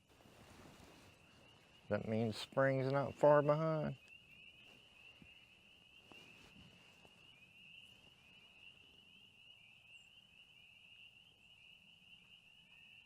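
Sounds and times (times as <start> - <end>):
chorus of frogs peeping: 0.8 - 13.0.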